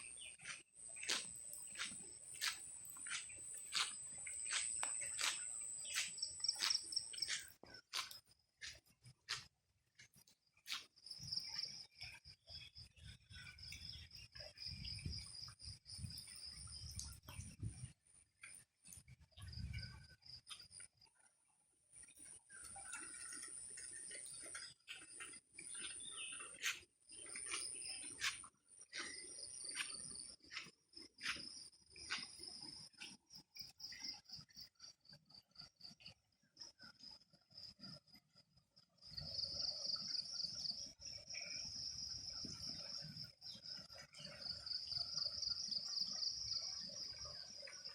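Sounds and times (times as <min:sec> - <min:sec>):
insects chirring: 0:00.0 - 0:08.1, 0:22.9 - 0:35.0.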